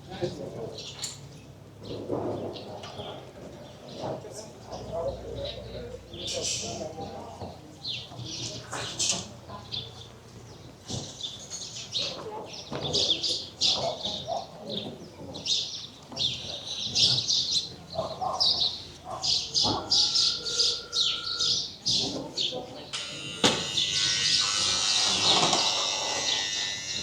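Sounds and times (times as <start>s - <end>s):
songbirds chirping: 0.0s - 27.0s
faint voices: 1.8s - 11.0s.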